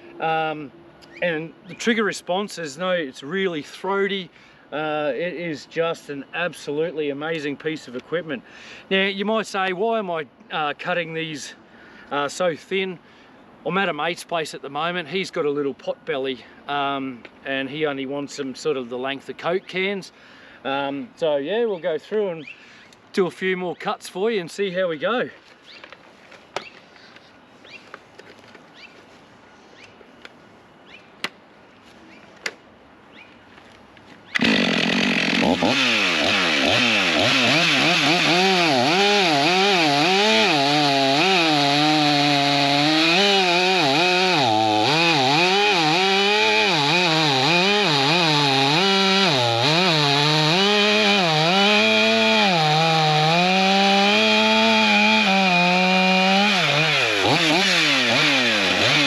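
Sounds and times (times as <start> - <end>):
chainsaw cutting wood: 34.4 - 59.0.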